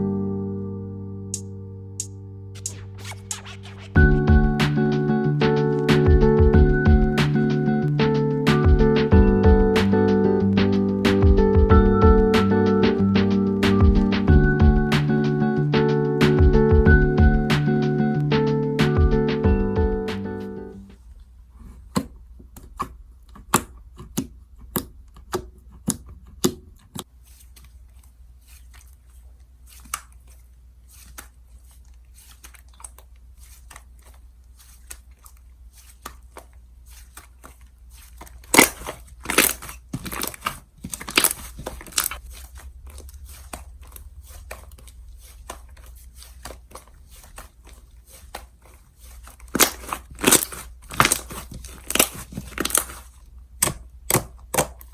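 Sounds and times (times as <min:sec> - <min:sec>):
slime popping and crackling: 0:49.5 - 0:54.9.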